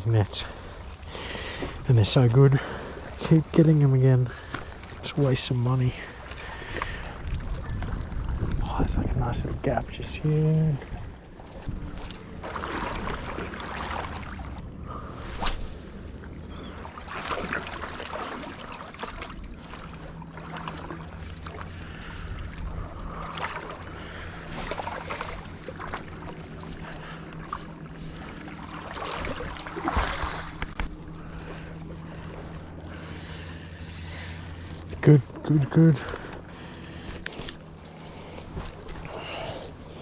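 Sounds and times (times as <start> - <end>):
low steady hum: 0.0 - 40.0
water sloshing from wading: 0.0 - 40.0
wind on microphone: 7.0 - 10.2.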